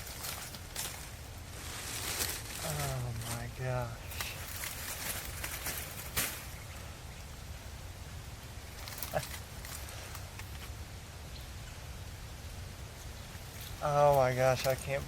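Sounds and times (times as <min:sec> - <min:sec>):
rustles and clicks: 0:00.0 - 0:06.7, 0:08.6 - 0:10.8.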